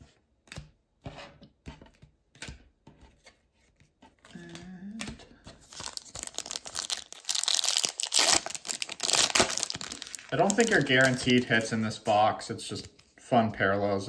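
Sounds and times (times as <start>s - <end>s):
foil wrapper crinkling and tearing: 5.6s - 11.7s.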